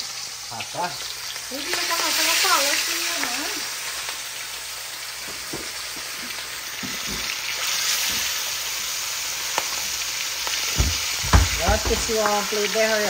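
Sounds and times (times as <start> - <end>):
fish sizzling in hot oil: 0.0 - 13.0.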